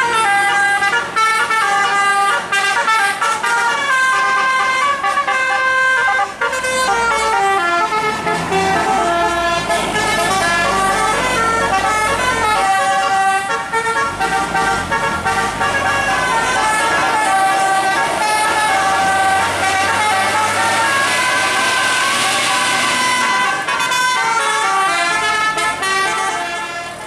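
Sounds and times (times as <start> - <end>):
low bus engine rumble: 0.0 - 27.0
musical bus horn melody: 0.0 - 27.0.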